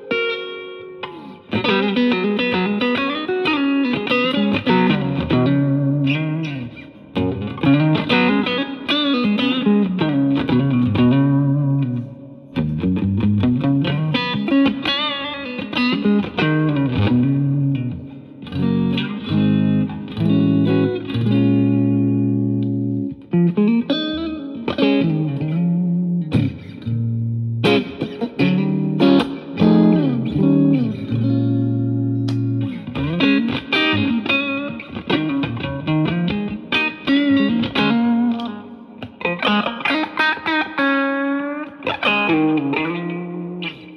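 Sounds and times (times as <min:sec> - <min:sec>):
bluesy electric guitar: 0:00.0 - 0:43.9.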